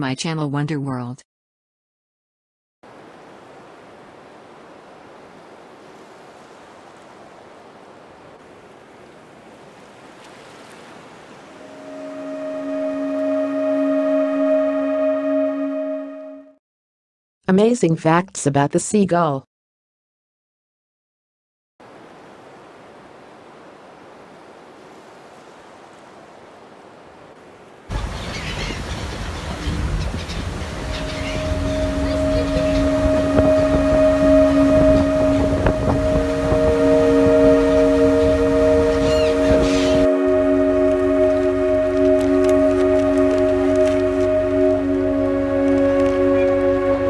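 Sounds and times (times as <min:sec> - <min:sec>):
ocean surf washing: 0:02.9 - 0:15.8, 0:21.8 - 0:47.0
musical drone: 0:11.6 - 0:16.5, 0:30.4 - 0:47.0.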